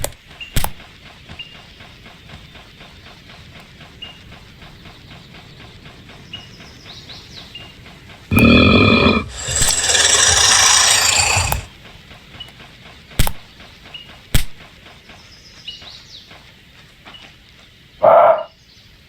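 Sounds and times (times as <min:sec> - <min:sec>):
loud harsh rasping noise: 0:08.3 - 0:11.7.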